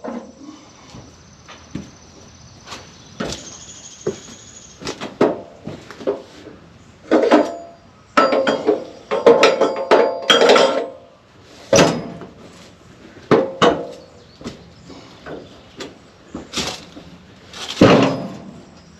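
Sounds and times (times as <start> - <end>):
metallic clanking and knocking: 7.1 - 11.0, 11.7 - 12.4, 17.8 - 18.7.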